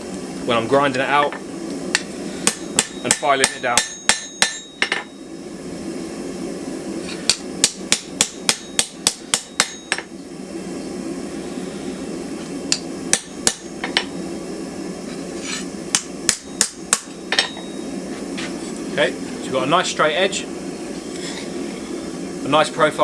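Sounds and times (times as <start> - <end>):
steady low hum: 0.0 - 23.0
hammer striking blade on anvil: 2.0 - 5.1, 7.3 - 10.1, 12.7 - 14.1, 15.9 - 17.7.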